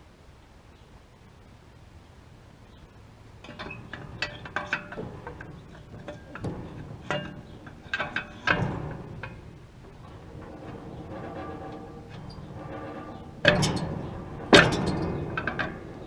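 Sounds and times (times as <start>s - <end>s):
pry bar clanking on metal: 3.4s - 16.0s.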